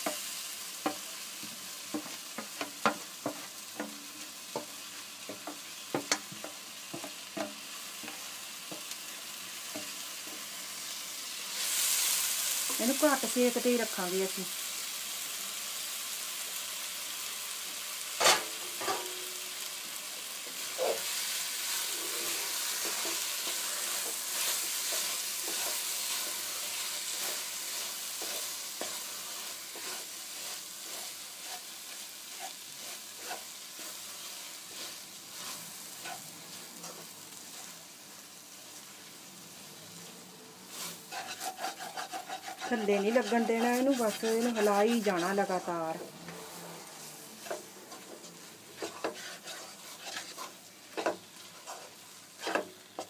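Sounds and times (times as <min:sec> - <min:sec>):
spoon scraping a pan: 0:00.0 - 0:09.0, 0:09.7 - 0:10.5, 0:18.2 - 0:19.4, 0:20.4 - 0:37.8, 0:40.6 - 0:53.0
food sizzling in a pan: 0:00.0 - 0:53.0.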